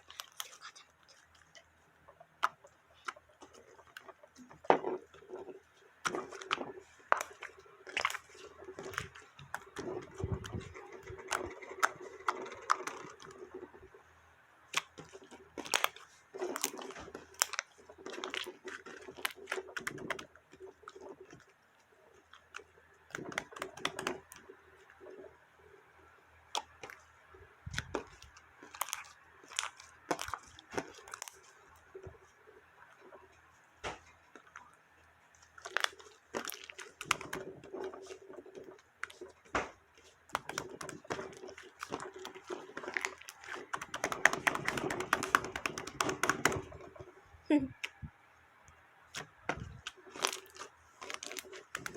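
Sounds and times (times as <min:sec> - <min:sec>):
crackling pops and clicks: 0:14.7 - 0:21.5, 0:22.2 - 0:25.3, 0:35.4 - 0:47.1, 0:48.7 - 0:51.9
slime squished by hand: 0:14.7 - 0:21.5, 0:27.6 - 0:32.3, 0:35.4 - 0:48.0, 0:49.1 - 0:51.9.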